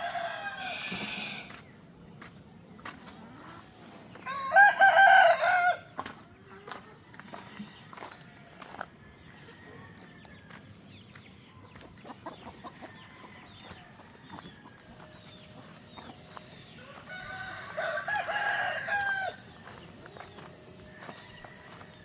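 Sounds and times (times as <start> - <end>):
rooster crowing: 0.0 - 1.6, 4.2 - 5.9, 7.3 - 10.6, 12.7 - 22.0
chickens chirping and clucking: 0.0 - 22.0.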